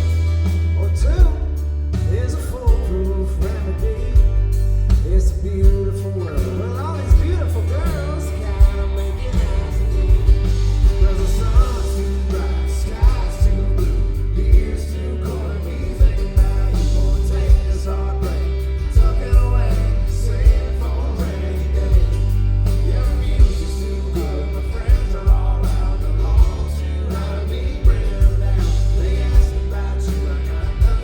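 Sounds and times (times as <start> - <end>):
country-rock band playing: 0.0 - 31.0.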